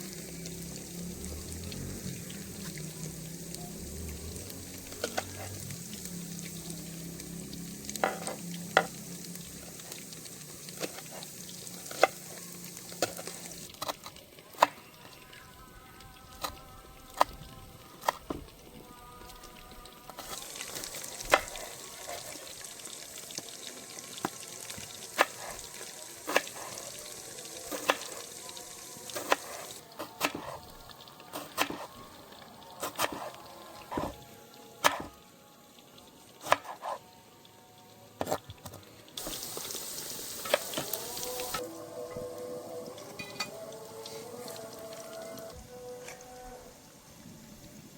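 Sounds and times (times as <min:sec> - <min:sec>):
food sizzling in hot oil: 0:00.0 - 0:47.9
utensil scraping a pan: 0:08.0 - 0:08.9.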